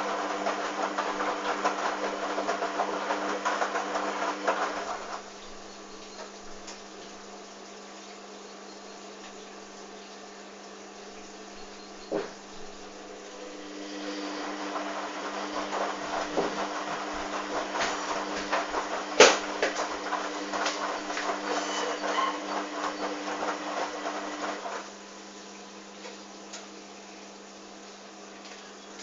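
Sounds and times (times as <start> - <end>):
washing machine drum turning: 11.4 - 24.9
laundry tumbling: 14.5 - 24.8.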